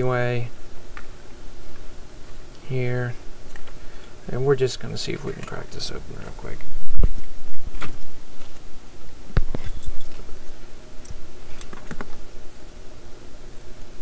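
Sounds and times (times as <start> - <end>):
padlock and keys clinking: 9.5 - 10.3.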